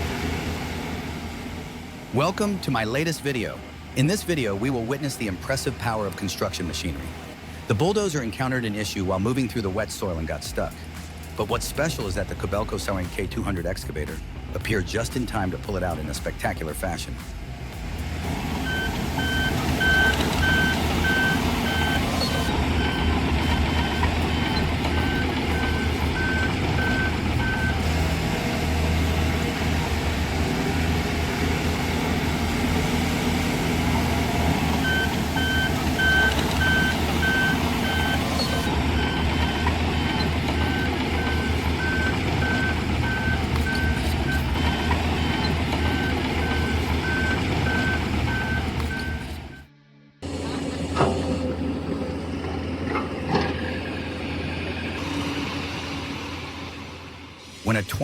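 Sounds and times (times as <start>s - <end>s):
diesel engine running: 0.0s - 58.0s
backup alarm beeping: 18.6s - 28.0s, 34.8s - 49.7s.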